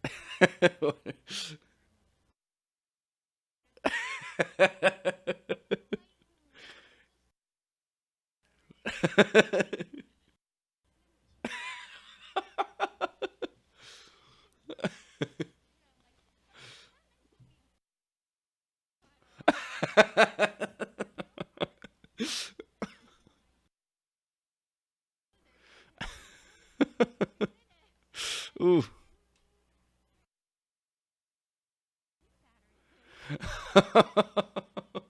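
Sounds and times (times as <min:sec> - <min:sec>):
man chuckling: 0:28.6 - 0:29.1, 0:33.3 - 0:35.0.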